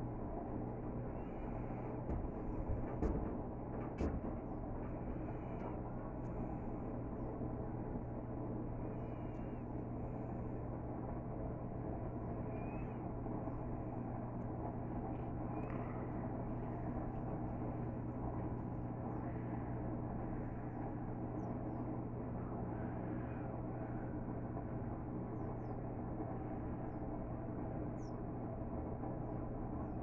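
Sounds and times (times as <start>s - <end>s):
washing machine spinning: 0.0s - 8.8s.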